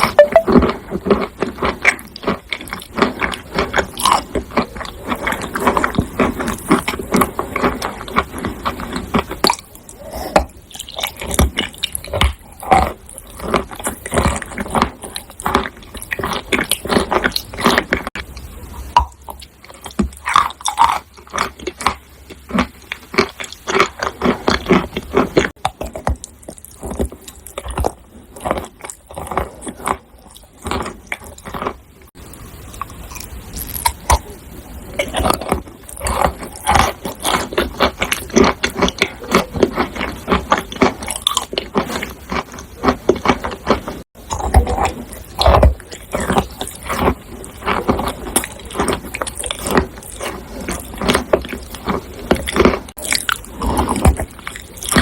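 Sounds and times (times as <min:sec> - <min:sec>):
dry clay crunching and crackling: 0:19.0 - 0:55.0.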